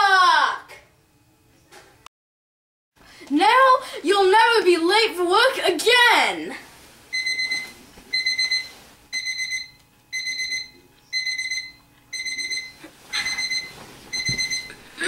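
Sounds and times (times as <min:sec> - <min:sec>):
alarm clock beeping: 0:07.1 - 0:14.8.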